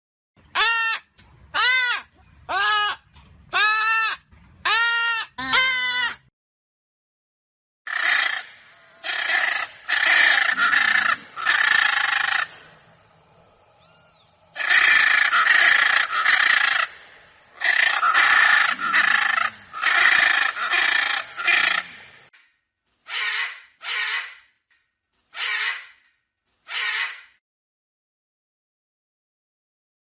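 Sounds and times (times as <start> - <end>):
macaw squawking: 7.9 - 12.5, 14.6 - 16.9, 17.6 - 22.0, 23.1 - 24.4, 25.4 - 26.0, 26.7 - 27.3.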